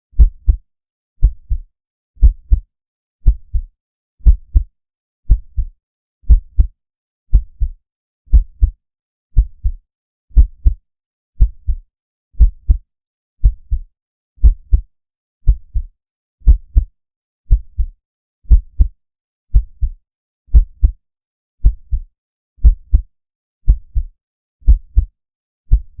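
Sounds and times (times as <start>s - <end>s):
heartbeat thumps: 0.2s - 0.6s, 1.2s - 2.6s, 3.2s - 4.7s, 5.3s - 5.7s, 6.3s - 6.7s, 7.3s - 8.8s, 9.4s - 9.8s, 10.4s - 10.8s, 11.4s - 11.8s, 12.4s - 12.8s, 13.4s - 13.8s, 14.4s - 14.8s, 15.4s - 15.9s, 16.5s - 16.9s, 17.5s - 17.9s, 18.5s - 18.9s, 19.5s - 21.0s, 21.6s - 22.0s, 22.6s - 23.1s, 23.7s - 24.1s, 24.7s - 25.1s, 25.7s - 26.0s.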